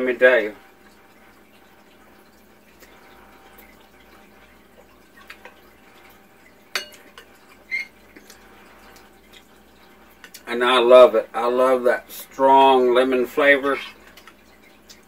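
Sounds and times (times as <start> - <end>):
faint chewing: 7.2 - 9.6.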